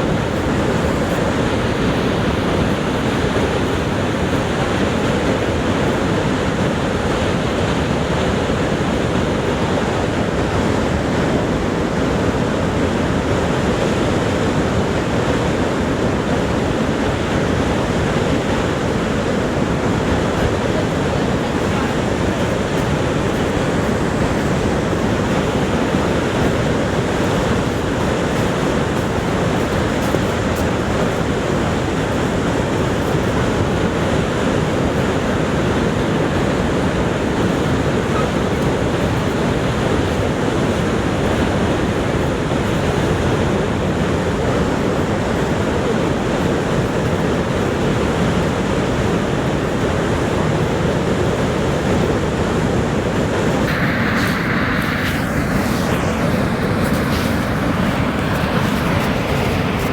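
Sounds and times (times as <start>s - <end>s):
waterfall roaring: 0.0s - 59.9s
brief higher hiss: 53.6s - 59.9s.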